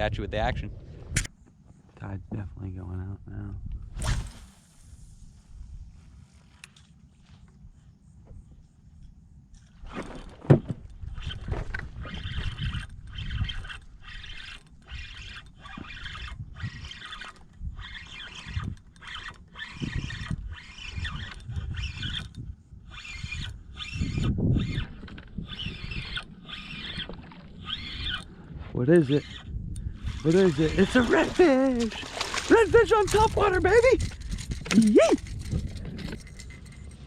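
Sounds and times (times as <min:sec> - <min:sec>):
fishing reel cranking: 0:10.9 - 0:37.0.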